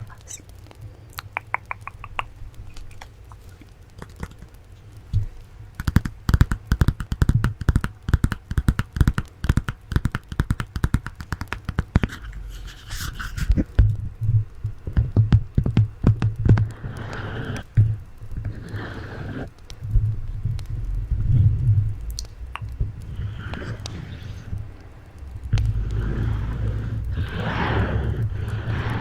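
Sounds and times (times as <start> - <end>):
scratchy hiss: 0.0 - 29.0
rapid finger tapping: 1.2 - 13.2, 21.5 - 29.0.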